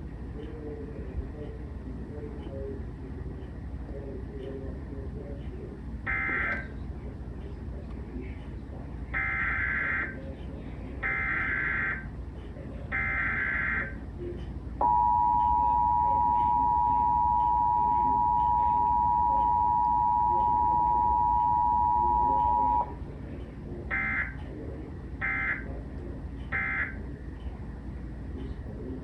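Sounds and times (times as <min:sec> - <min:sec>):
two-tone attention signal: 0:14.8 - 0:22.9.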